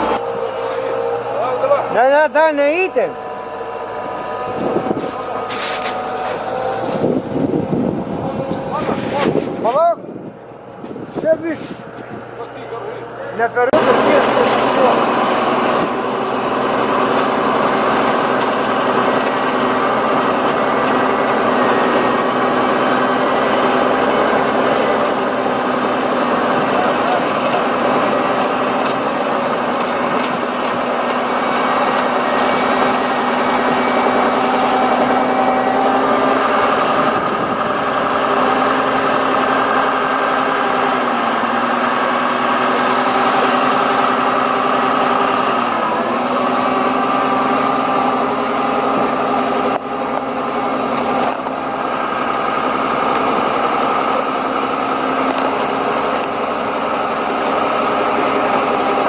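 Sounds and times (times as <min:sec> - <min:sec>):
heavy machinery diesel engines: 0:00.0 - 0:59.0.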